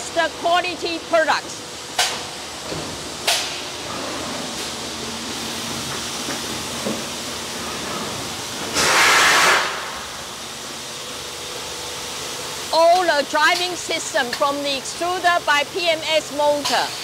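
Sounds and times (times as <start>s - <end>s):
factory machine hiss: 0.2s - 17.0s
short sharp hiss: 8.7s - 10.1s
burst of hissing air: 8.7s - 10.3s.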